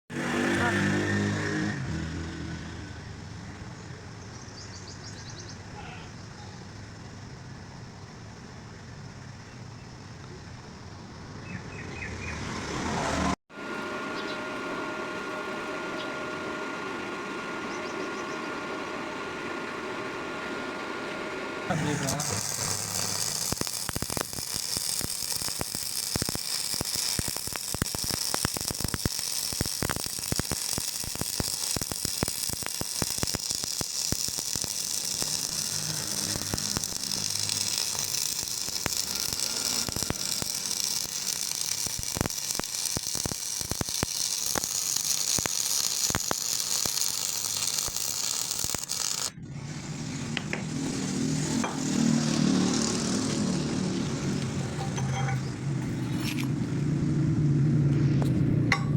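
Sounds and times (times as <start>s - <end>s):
welding arc crackling: 21.7s - 58.9s
low rumble: 53.4s - 58.9s.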